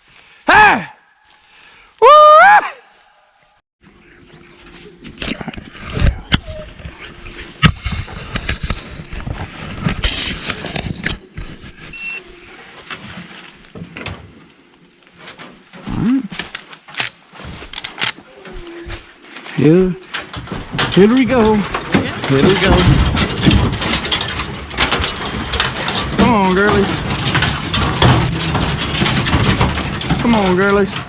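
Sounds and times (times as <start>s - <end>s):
footsteps rustling through brush: 0.0s - 0.4s, 1.0s - 3.6s, 8.0s - 13.8s, 14.4s - 21.6s.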